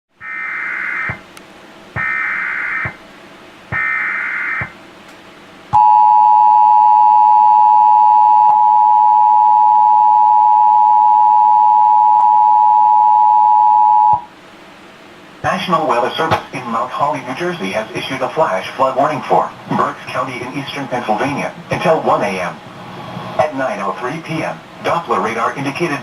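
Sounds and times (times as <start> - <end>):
warbling digital data bursts: 0.2 - 1.2, 2.0 - 3.0, 3.8 - 4.8
steady two-tone attention signal: 5.8 - 14.3.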